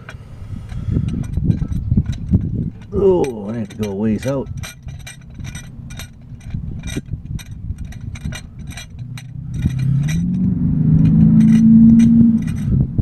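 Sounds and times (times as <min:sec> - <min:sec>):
clamp screw metallic clicks: 0:00.0 - 0:12.8
passing vehicle engine: 0:08.6 - 0:13.0.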